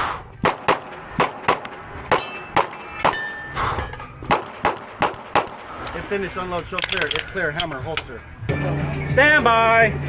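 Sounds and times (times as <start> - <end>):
pistol shots: 0.4 - 3.2, 4.3 - 5.6.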